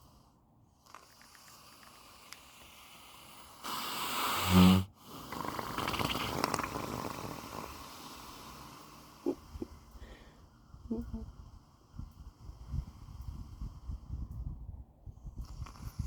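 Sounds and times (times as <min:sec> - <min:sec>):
horse snoring: 0:00.9 - 0:09.8
horse noisy breathing: 0:00.9 - 0:10.5.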